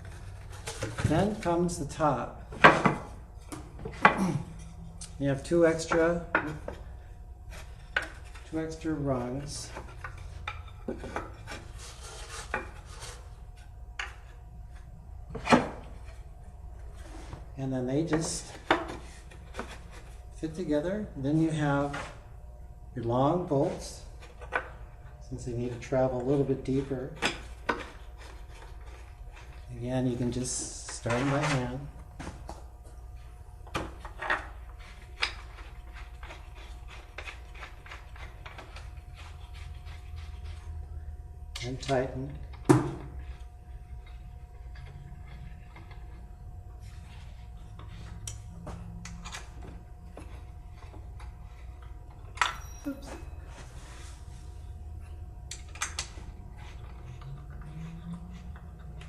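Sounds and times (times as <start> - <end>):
wood rubbing: 5.8 - 16.2, 33.9 - 41.1.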